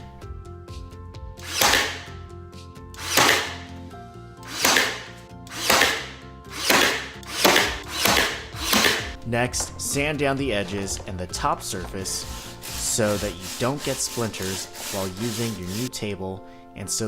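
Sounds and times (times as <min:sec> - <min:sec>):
background music: 0:00.0 - 0:17.0
scraping strokes on wood: 0:01.5 - 0:02.1, 0:03.0 - 0:03.7, 0:04.5 - 0:09.2, 0:12.0 - 0:15.9.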